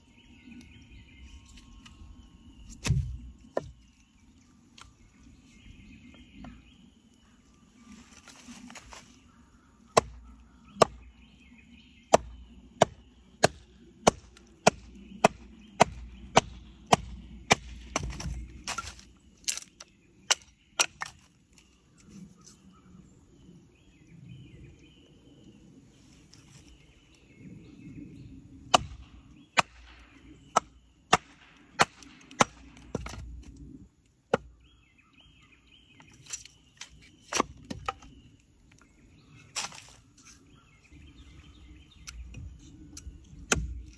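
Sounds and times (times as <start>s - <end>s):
faint birds chirping: 0.0s - 43.9s
hatchet chopping wood: 2.7s - 3.8s, 9.9s - 11.1s, 12.1s - 21.3s, 28.7s - 33.5s, 34.3s - 34.6s, 36.3s - 38.1s, 42.9s - 43.9s.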